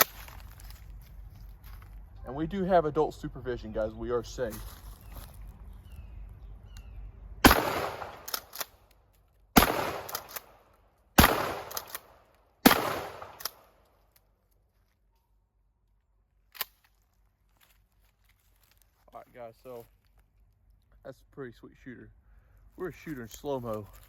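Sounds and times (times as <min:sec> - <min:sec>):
shotgun shots: 0:07.4 - 0:08.7, 0:09.6 - 0:10.6, 0:11.2 - 0:13.7.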